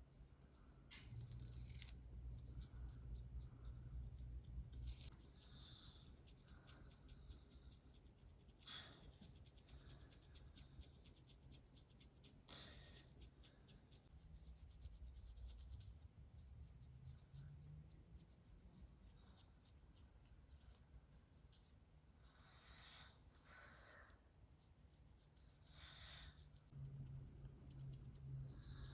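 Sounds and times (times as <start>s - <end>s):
fingernails scratching scalp: 14.0s - 23.7s.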